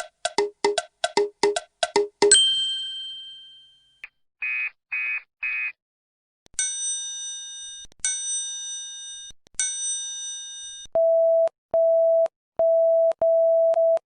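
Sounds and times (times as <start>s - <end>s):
bell-like ding: 2.3s - 3.9s.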